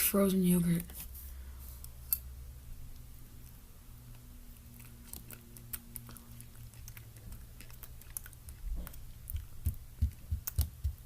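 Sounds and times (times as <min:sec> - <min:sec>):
person chewing: 0:03.3 - 0:11.0.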